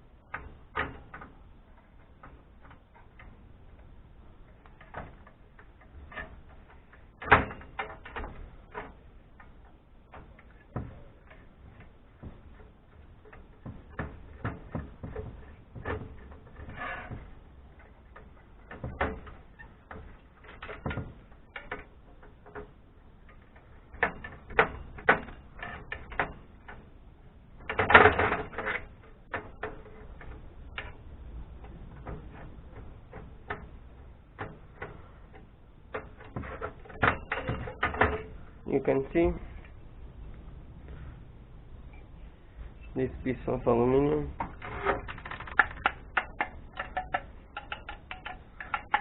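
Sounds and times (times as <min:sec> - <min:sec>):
metal clatter: 0:27.6 - 0:39.7, 0:43.4 - 0:49.0
hand tools clicking on metal: 0:44.5 - 0:49.0.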